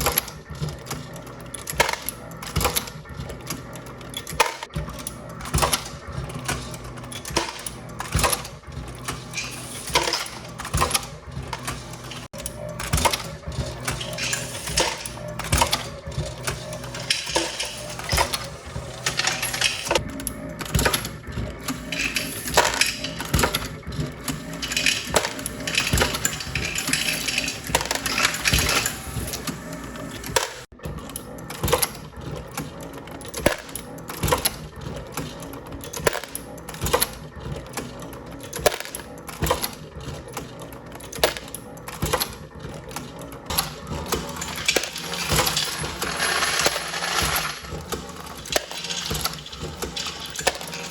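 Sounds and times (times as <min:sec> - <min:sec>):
reloading press mechanical clatter: 0:00.0 - 0:50.9
brass cases clinking: 0:03.9 - 0:30.7, 0:43.5 - 0:50.9.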